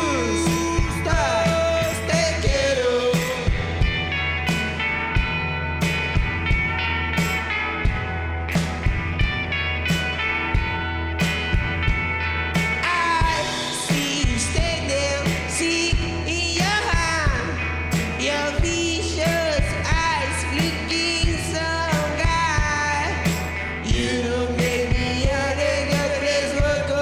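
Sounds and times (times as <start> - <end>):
person singing: 0.0 - 3.9, 12.8 - 27.0
bass guitar: 0.0 - 27.0
drums: 0.0 - 27.0
electric guitar: 0.0 - 27.0.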